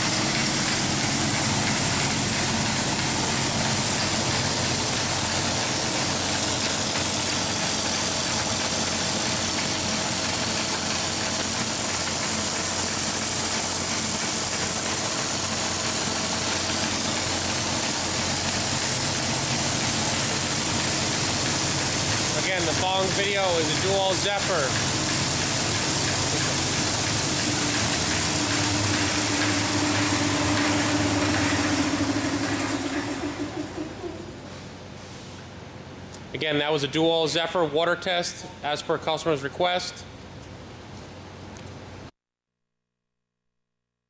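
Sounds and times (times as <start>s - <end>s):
band saw running: 0.0s - 34.5s.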